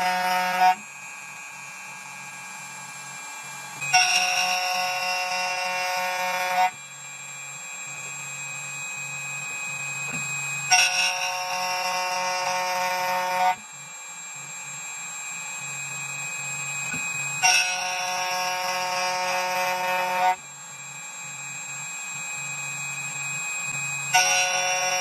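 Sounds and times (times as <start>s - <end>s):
key cutting machine spindle whine: 0.0s - 25.0s
shrill ringing cutter screech: 0.0s - 25.0s.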